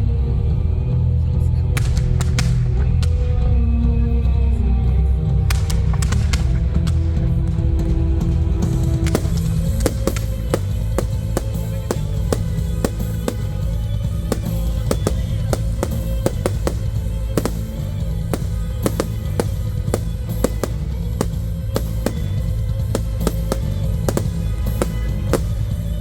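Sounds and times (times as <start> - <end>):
firework bangs: 1.8 - 3.2, 8.5 - 26.0.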